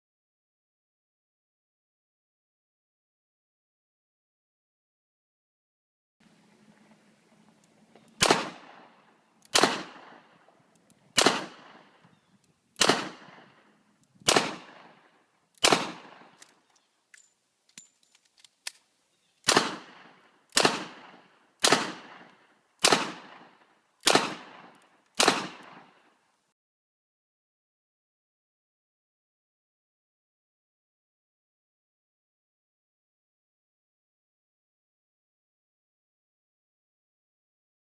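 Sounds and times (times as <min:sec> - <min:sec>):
revolver gunshots with echo: 0:08.2 - 0:10.4, 0:11.2 - 0:12.0, 0:12.8 - 0:16.4, 0:19.5 - 0:26.0.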